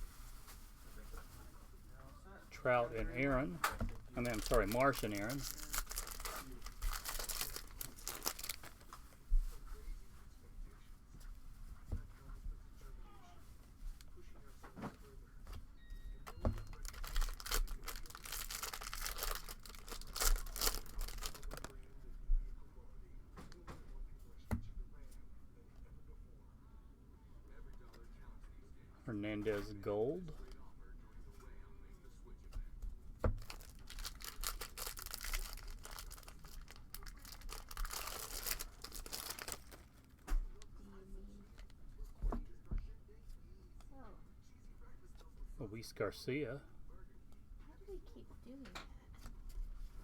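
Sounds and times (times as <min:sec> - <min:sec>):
wrapper tearing and crinkling: 0:04.1 - 0:08.9, 0:16.6 - 0:21.8, 0:33.4 - 0:40.2.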